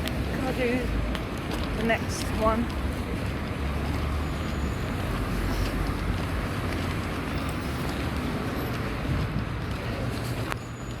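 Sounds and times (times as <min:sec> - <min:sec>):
street traffic rumble: 0:00.0 - 0:11.0.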